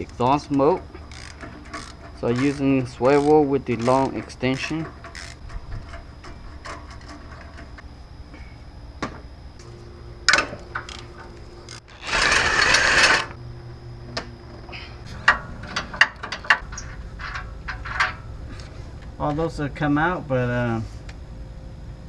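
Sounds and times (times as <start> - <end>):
ratchet rasping burst: 5.0 - 5.4, 11.7 - 13.4.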